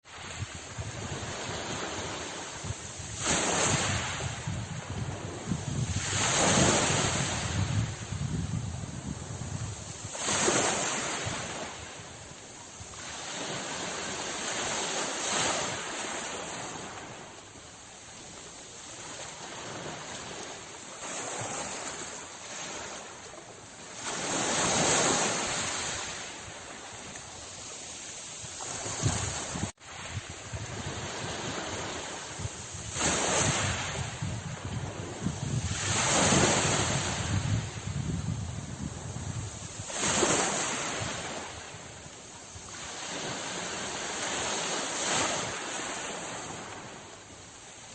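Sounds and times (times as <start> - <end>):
sea waves breaking on shore: 0.0 - 47.9.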